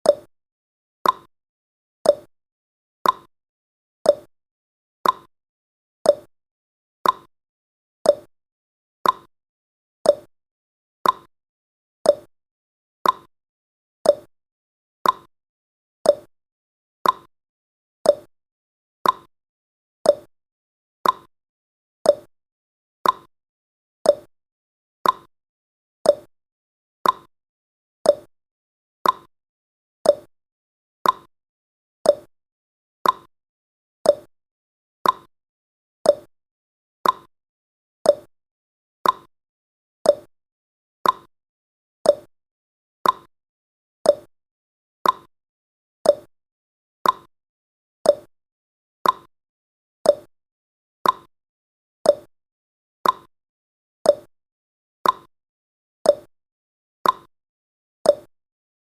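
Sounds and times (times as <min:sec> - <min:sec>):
timer ticking: 0:00.0 - 0:00.3, 0:01.0 - 0:01.3, 0:02.1 - 0:02.3, 0:03.0 - 0:03.3, 0:04.1 - 0:04.3, 0:05.0 - 0:05.3, 0:06.1 - 0:06.3, 0:07.0 - 0:07.3, 0:08.1 - 0:08.3, 0:09.0 - 0:09.3, 0:10.1 - 0:10.3, 0:11.0 - 0:11.3, 0:12.1 - 0:12.3, 0:13.0 - 0:13.3, 0:14.1 - 0:14.3, 0:15.0 - 0:15.3, 0:16.1 - 0:16.3, 0:17.0 - 0:17.3, 0:18.1 - 0:18.3, 0:19.0 - 0:19.3, 0:20.1 - 0:20.3, 0:21.0 - 0:21.3, 0:22.1 - 0:22.3, 0:23.0 - 0:23.3, 0:24.1 - 0:24.3, 0:25.0 - 0:25.3, 0:26.1 - 0:26.3, 0:27.0 - 0:27.3, 0:28.0 - 0:28.3, 0:29.0 - 0:29.3, 0:30.0 - 0:30.3, 0:31.0 - 0:31.3, 0:32.1 - 0:32.3, 0:33.0 - 0:33.3, 0:34.1 - 0:34.3, 0:35.0 - 0:35.3, 0:36.0 - 0:36.3, 0:37.0 - 0:37.3, 0:38.1 - 0:38.3, 0:39.0 - 0:39.3, 0:40.1 - 0:40.3, 0:41.0 - 0:41.3, 0:42.1 - 0:42.3, 0:43.0 - 0:43.3, 0:44.1 - 0:44.3, 0:45.0 - 0:45.3, 0:46.0 - 0:46.3, 0:47.0 - 0:47.3, 0:48.1 - 0:48.3, 0:49.0 - 0:49.3, 0:50.1 - 0:50.3, 0:51.0 - 0:51.3, 0:52.1 - 0:52.3, 0:53.0 - 0:53.3, 0:54.1 - 0:54.3, 0:55.0 - 0:55.3, 0:56.1 - 0:56.3, 0:57.0 - 0:57.3, 0:58.1 - 0:58.3.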